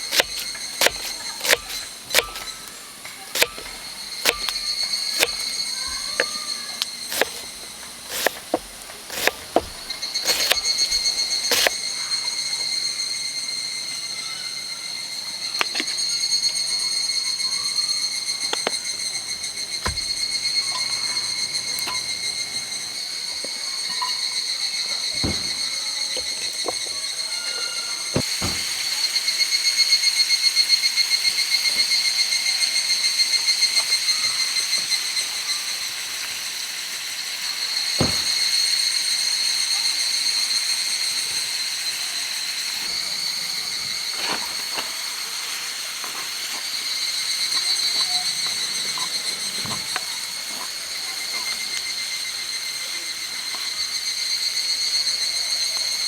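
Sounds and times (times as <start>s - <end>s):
insects chorus: 0.0s - 56.0s
sharp clicks and knocks: 0.1s - 2.6s, 3.4s - 11.8s.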